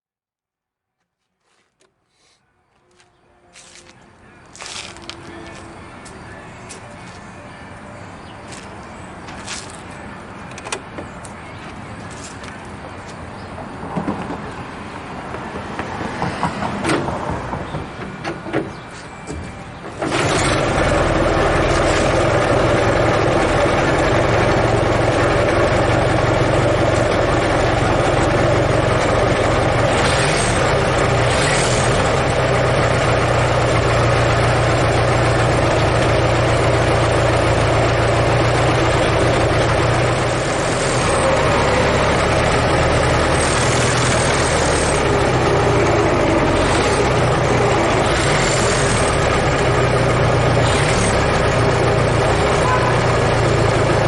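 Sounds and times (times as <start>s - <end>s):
car engine running: 20.0s - 54.0s.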